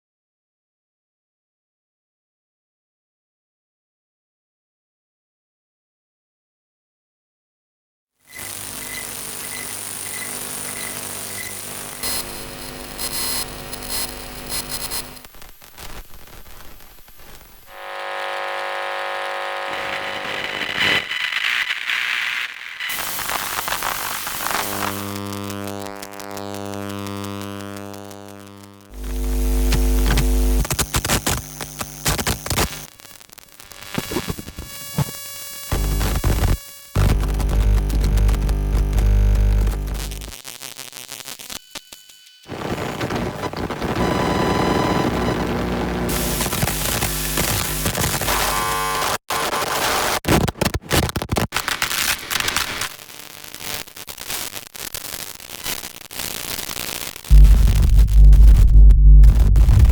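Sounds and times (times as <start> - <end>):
buzzy tone: 8.3 - 15.2, 17.6 - 50.2, 57.3 - 59.9
glitchy static bursts: 8.3 - 59.9
crackling clicks: 29.0 - 32.9
deep electronic hum: 57.3 - 59.9.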